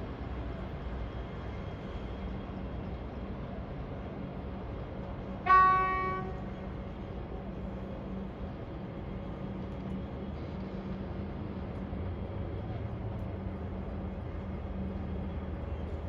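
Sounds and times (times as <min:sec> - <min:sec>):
train horn toot: 0:05.4 - 0:06.6.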